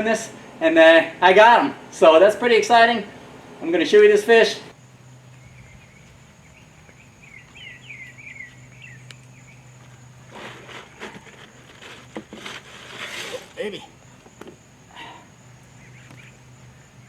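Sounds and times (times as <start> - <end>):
low steady hum: 0.0 - 17.0
rustling handling noise: 9.8 - 14.6
quick falling chirps: 10.2 - 16.4.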